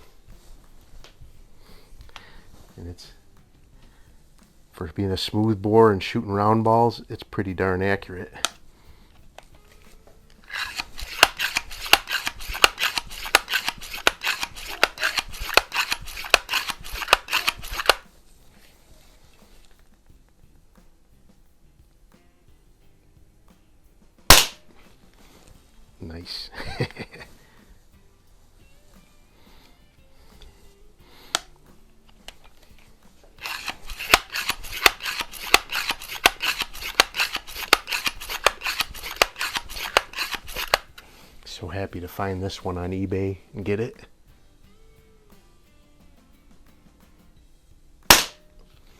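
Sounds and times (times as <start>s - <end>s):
air rifle being pumped: 0.0s - 4.7s, 8.3s - 20.0s, 24.3s - 25.5s, 28.9s - 41.6s, 48.1s - 48.9s.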